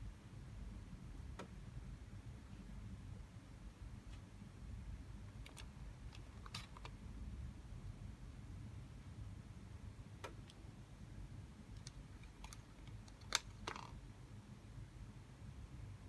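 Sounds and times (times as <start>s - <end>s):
light clicks and taps: 11.7s - 14.0s.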